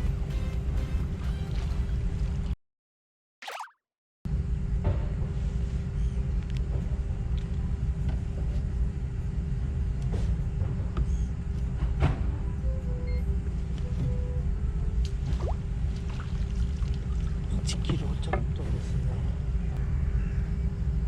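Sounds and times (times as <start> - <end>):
faint constant hum: 4.3 - 21.0
steady low rumble: 4.3 - 21.0.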